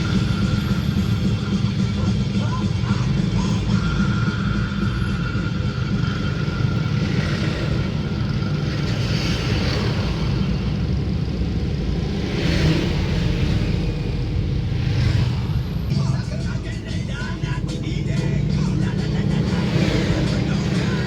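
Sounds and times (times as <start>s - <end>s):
low engine rumble: 0.0s - 21.0s
vehicles passing by: 0.0s - 21.0s.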